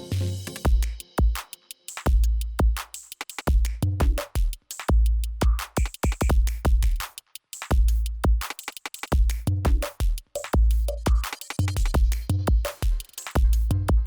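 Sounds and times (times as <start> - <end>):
electronic music with drum machine: 0.0 - 2.3.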